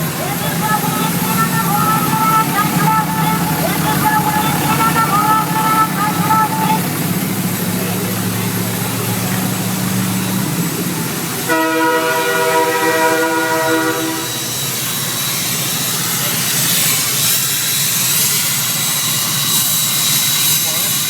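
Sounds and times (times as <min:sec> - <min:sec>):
steady vehicle noise: 0:00.0 - 0:21.0
air train horn blast: 0:11.4 - 0:14.7.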